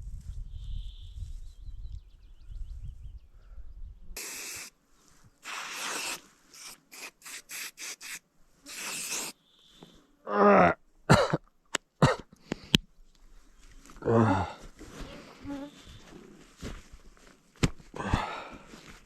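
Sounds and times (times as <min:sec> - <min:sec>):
wind rumble on microphone: 0:00.0 - 0:04.2.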